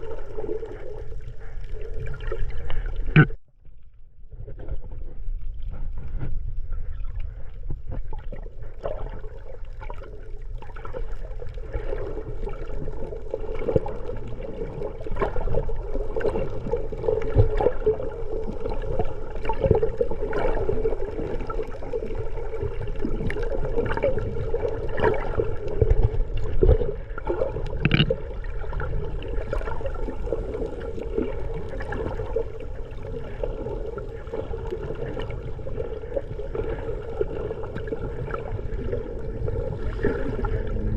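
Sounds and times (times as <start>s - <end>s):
water sloshing underwater: 0.0s - 40.9s.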